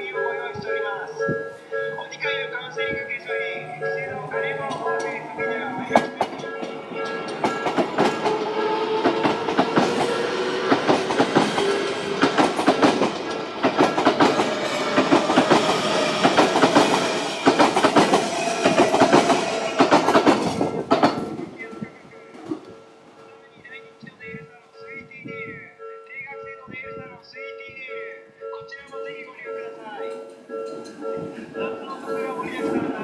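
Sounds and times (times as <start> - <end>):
train wheels clicking over rail joints: 5.9 - 22.8.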